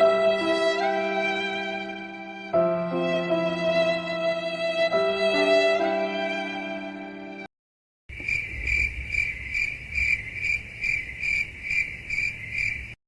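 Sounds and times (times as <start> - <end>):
sad violin tune: 0.0 - 7.5
crickets chirping: 8.1 - 13.0.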